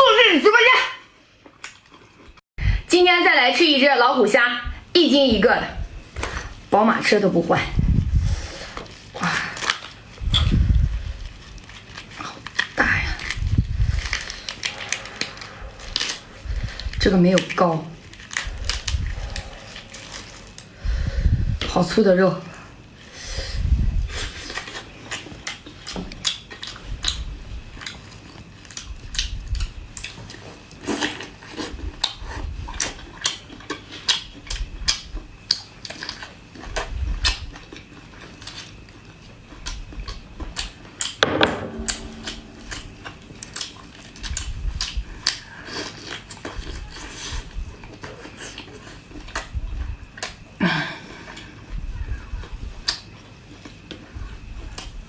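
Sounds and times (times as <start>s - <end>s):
biting and chewing prawn meat: 7.8s - 17.0s, 18.0s - 20.8s, 22.9s - 41.2s, 42.3s - 50.6s.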